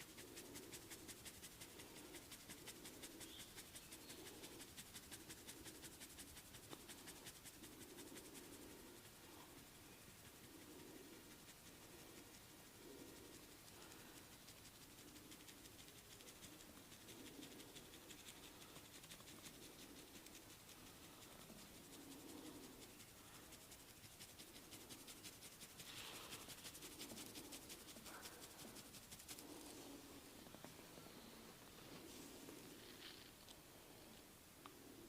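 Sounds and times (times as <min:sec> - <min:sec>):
hands rubbing skin and hair: 0:00.0 - 0:09.6, 0:10.2 - 0:30.2
rapid scratchy ticks: 0:00.0 - 0:30.0.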